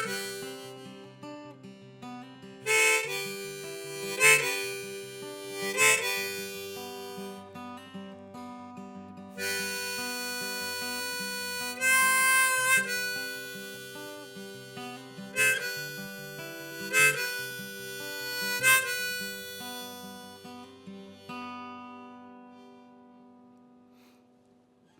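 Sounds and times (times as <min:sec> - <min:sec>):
harmonica playing: 0:00.0 - 0:01.4, 0:02.7 - 0:07.7, 0:09.4 - 0:21.8
acoustic guitar: 0:00.0 - 0:24.9.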